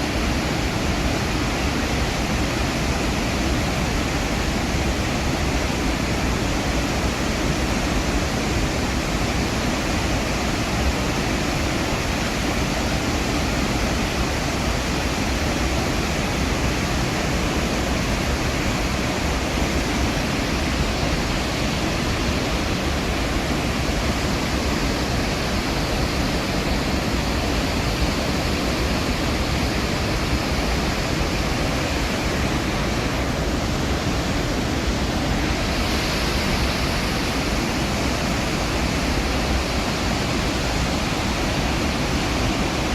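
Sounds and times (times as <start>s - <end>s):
waterfall thundering: 0.0s - 42.9s.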